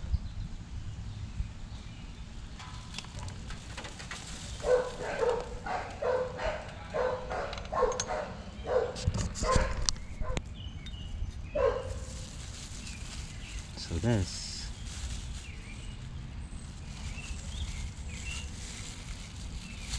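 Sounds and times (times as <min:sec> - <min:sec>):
dog barking: 0:04.6 - 0:10.4, 0:11.6 - 0:12.1.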